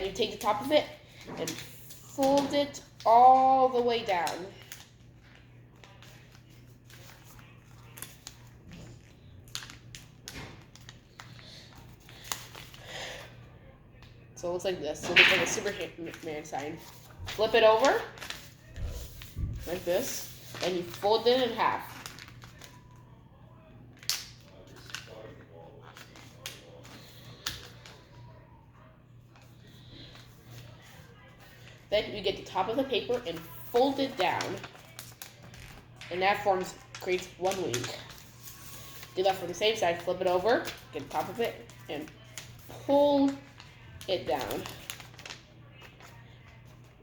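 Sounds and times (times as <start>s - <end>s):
paper being folded and creased: 0.3s - 12.8s, 15.7s - 23.0s, 24.0s - 28.2s, 32.5s - 47.0s
paper folding and creasing: 16.8s - 22.8s, 44.3s - 46.6s.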